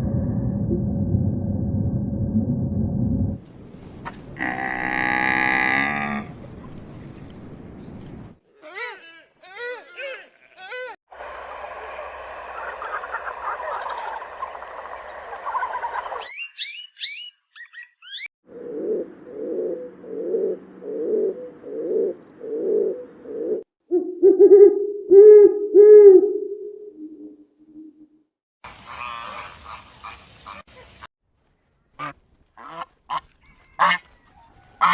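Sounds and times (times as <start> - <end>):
loud low animal calls: 4.0 - 6.4
noisy bird chorus: 11.2 - 16.8
high bird chirps: 13.9 - 18.3.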